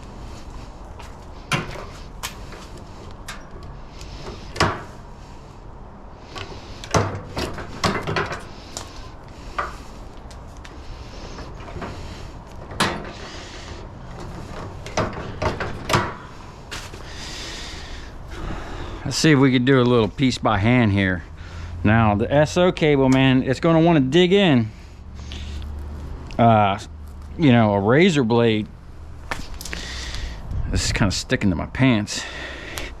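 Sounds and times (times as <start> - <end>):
tools and cable clattering: 0.4 - 5.0, 6.3 - 13.4, 14.1 - 17.2.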